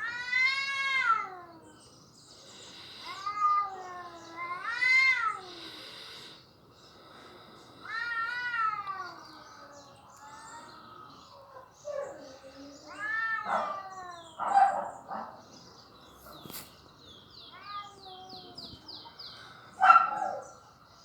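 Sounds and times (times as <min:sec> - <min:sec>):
cats yowling in a fight: 0:00.0 - 0:01.7, 0:03.0 - 0:05.6, 0:07.8 - 0:11.1, 0:11.8 - 0:15.4.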